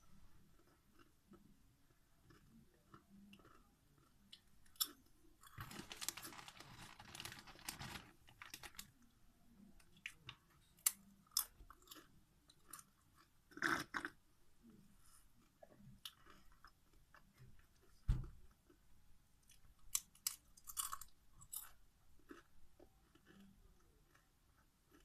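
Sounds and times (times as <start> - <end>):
chips crunching and chewing: 2.2 - 8.9, 16.0 - 17.3, 19.5 - 24.3.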